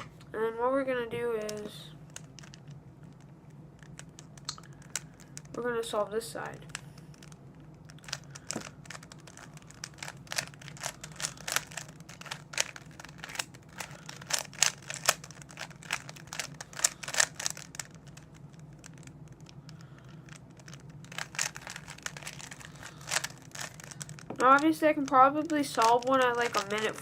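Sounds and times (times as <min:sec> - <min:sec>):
speed cube layers clicking: 0:08.0 - 0:27.0.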